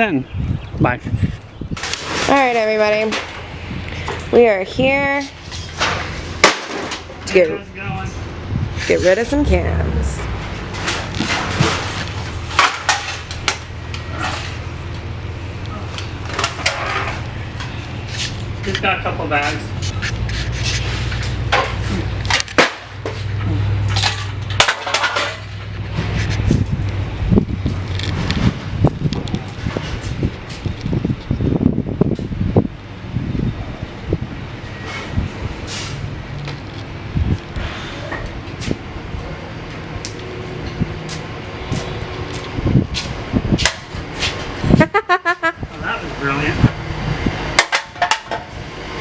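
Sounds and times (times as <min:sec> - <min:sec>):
low engine hum: 0:08.1 - 0:37.6
machinery hum: 0:08.2 - 0:20.3.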